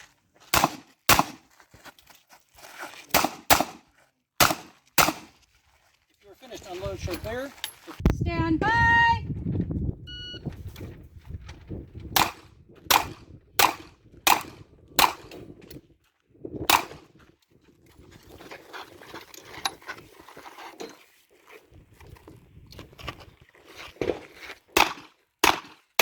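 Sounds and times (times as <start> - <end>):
pistol shots: 0.5 - 1.4, 3.1 - 3.8, 4.4 - 5.3, 12.2 - 15.3, 16.7 - 17.0, 24.8 - 25.8
shot timer beep: 10.1 - 10.5.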